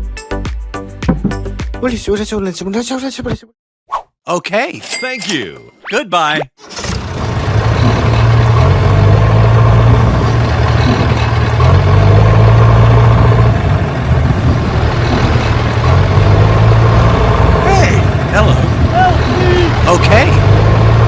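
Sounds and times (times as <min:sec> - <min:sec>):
tractor engine idling: 0:06.6 - 0:21.0.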